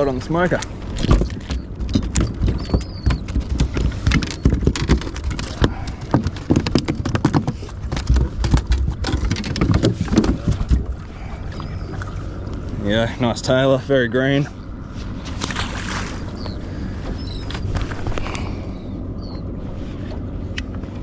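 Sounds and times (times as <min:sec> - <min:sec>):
fish flapping against boat: 0:00.5 - 0:12.5, 0:15.0 - 0:18.8.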